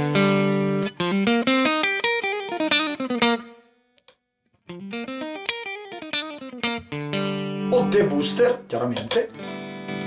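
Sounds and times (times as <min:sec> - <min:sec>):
clean electric guitar notes: 0:06.9 - 0:08.7.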